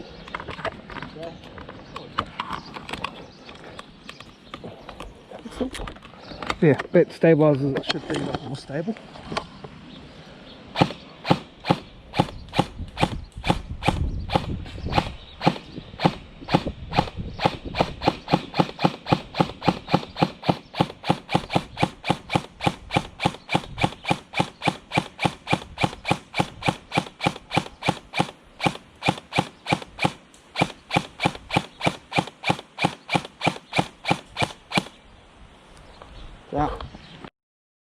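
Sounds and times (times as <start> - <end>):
airsoft gun firing single shots: 10.8 - 35.0.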